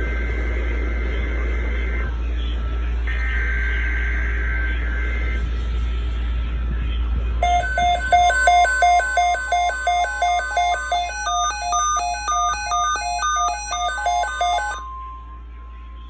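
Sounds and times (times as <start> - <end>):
electronic alert beeping: 7.4 - 15.2.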